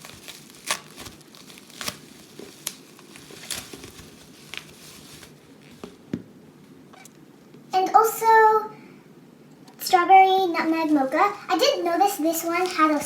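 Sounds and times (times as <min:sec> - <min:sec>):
plastic packaging crinkling: 0:00.0 - 0:06.0, 0:10.5 - 0:13.0.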